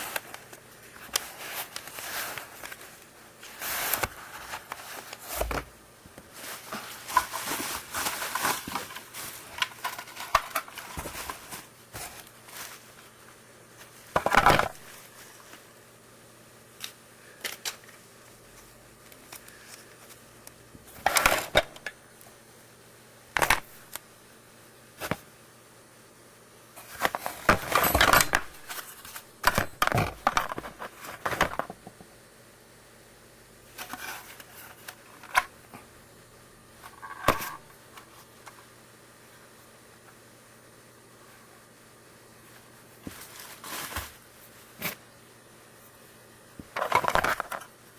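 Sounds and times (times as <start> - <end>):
handling small plastic parts: 6.4 - 12.7, 46.6 - 47.7.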